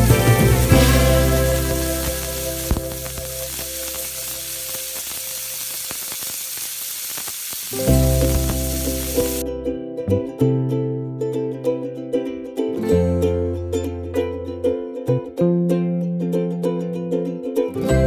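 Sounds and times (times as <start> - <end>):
hot oil sizzling: 0.0 - 9.4.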